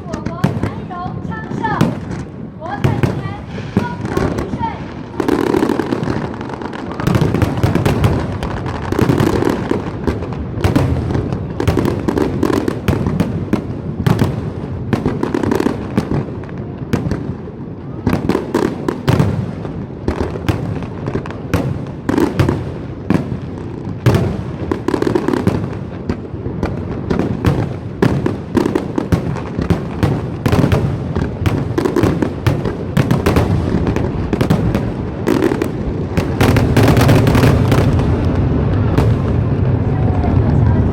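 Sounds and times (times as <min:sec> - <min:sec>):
fireworks bangs and crackles: 0:00.0 - 0:40.9.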